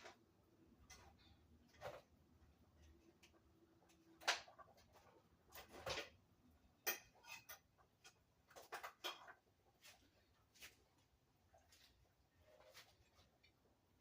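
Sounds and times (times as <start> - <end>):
cookware clicking and knocking: 6.8 - 9.4.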